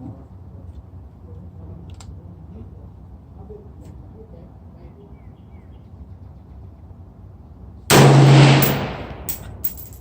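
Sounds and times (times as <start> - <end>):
rifle shot: 7.9 - 9.6.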